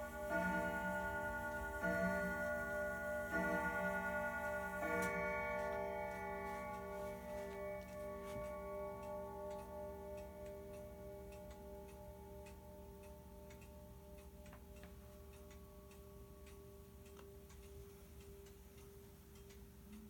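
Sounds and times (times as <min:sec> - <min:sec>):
grandfather clock chime: 0:00.0 - 0:19.0
clock ticking: 0:00.0 - 0:20.0.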